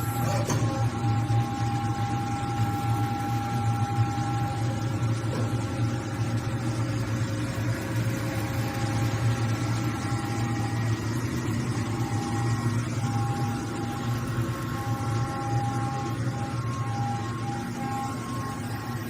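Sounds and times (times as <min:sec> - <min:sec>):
thin machine whine: 0:00.0 - 0:19.0
metal lathe humming: 0:08.4 - 0:19.0.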